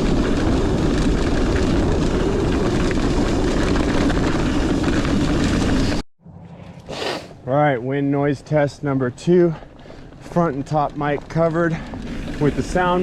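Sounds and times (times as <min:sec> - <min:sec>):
wind rumble on microphone: 0:00.0 - 0:06.0, 0:10.8 - 0:13.0.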